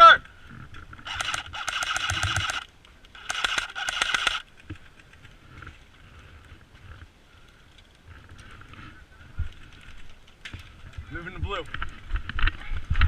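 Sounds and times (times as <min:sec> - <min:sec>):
airsoft rifle firing bursts: 0:01.1 - 0:04.4.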